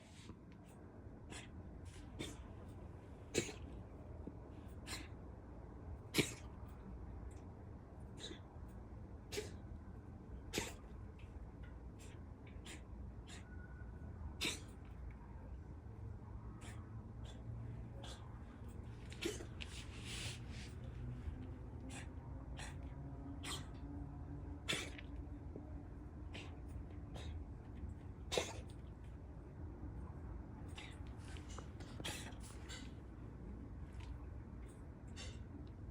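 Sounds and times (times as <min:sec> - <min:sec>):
cat coughing: 0:02.2 - 0:02.5, 0:03.3 - 0:03.8, 0:04.8 - 0:05.1, 0:06.1 - 0:06.6, 0:08.1 - 0:08.5, 0:09.2 - 0:09.7, 0:10.4 - 0:10.9, 0:14.4 - 0:14.9, 0:19.1 - 0:19.6, 0:23.4 - 0:23.8, 0:24.6 - 0:25.1, 0:26.3 - 0:27.4, 0:28.2 - 0:28.8, 0:30.7 - 0:32.9.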